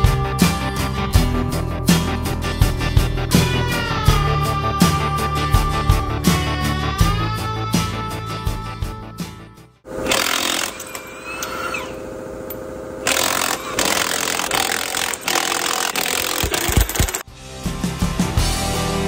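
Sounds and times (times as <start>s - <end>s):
background music: 0.0s - 9.8s, 17.2s - 19.0s
power tool rattling: 9.9s - 17.2s.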